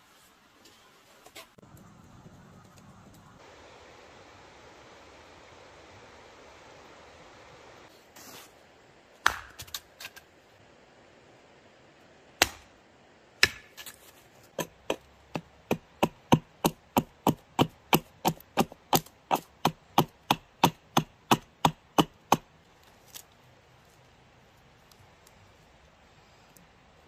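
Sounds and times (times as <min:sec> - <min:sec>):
wood being chopped: 0:09.2 - 0:09.8, 0:12.4 - 0:12.7, 0:13.4 - 0:13.9, 0:14.6 - 0:22.5.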